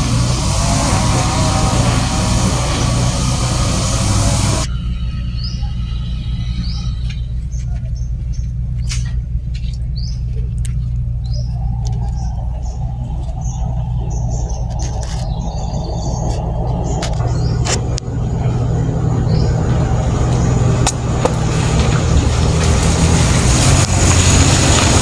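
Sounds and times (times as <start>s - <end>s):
birds chirping: 0.0s - 25.0s
low engine hum: 0.0s - 25.0s.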